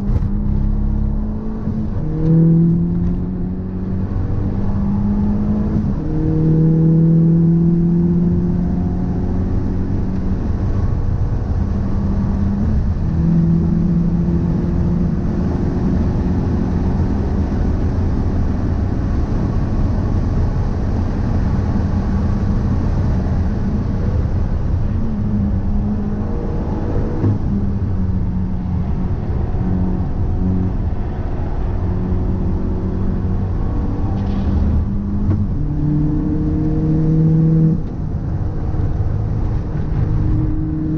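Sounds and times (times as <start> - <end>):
car engine and road rumble: 0.0 - 40.9.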